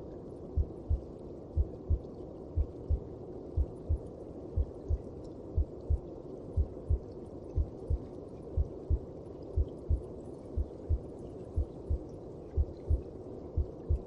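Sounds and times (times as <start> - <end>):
low whooshing hum: 0.0 - 14.0
heartbeat thumps: 0.6 - 1.0, 1.6 - 2.0, 2.6 - 3.0, 3.6 - 4.0, 5.6 - 6.0, 6.6 - 7.0, 9.6 - 12.0, 12.6 - 13.0, 13.6 - 14.0.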